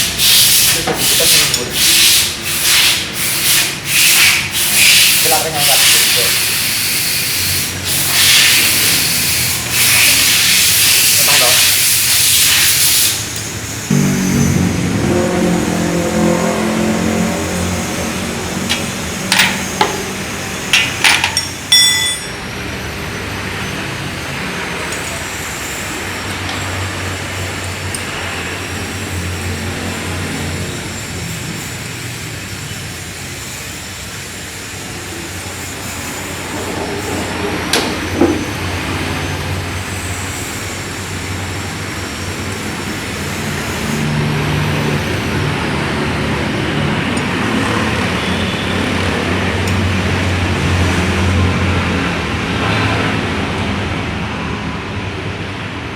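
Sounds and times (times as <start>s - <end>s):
scooter engine running: 13.8s - 20.6s.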